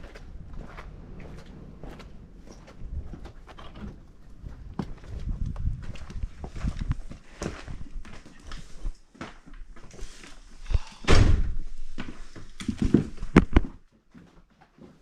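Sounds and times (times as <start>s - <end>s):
close knocks and thumps: 12.5s - 13.8s.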